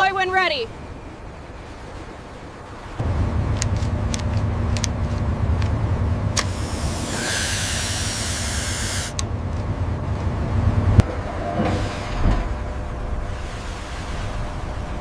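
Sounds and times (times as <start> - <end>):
low rumble: 2.7 - 15.0
air hissing: 6.4 - 9.2.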